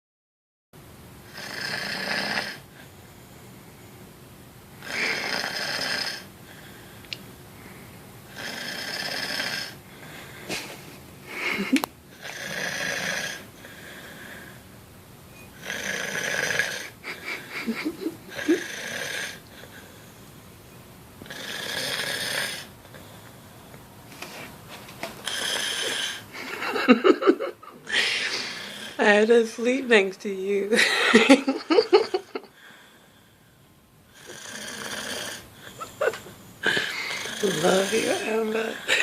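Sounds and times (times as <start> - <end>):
woman snoring loudly: 1.3 - 2.7, 4.8 - 6.3, 8.3 - 9.8, 12.1 - 13.5, 15.6 - 17.1, 18.3 - 19.4, 21.2 - 22.7, 25.2 - 26.3, 27.8 - 29.1, 31.8 - 32.4, 34.1 - 39.0
quiet breathing: 6.3 - 8.1, 9.7 - 11.7, 13.0 - 14.8, 19.3 - 20.4, 32.5 - 39.0.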